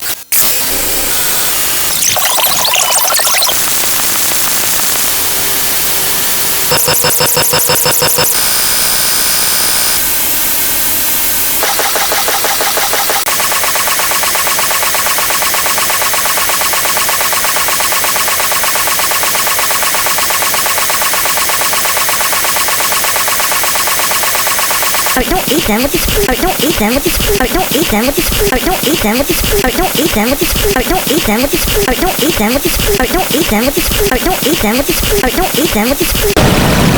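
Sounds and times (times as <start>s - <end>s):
harsh distorted sound effects: 0.4s - 8.4s, 11.6s - 36.9s
fast-pulsing buzz: 1.8s - 36.4s.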